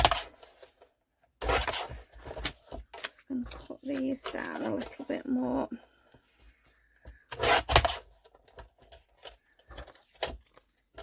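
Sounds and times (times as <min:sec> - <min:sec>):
paper handling: 0:07.4 - 0:11.0.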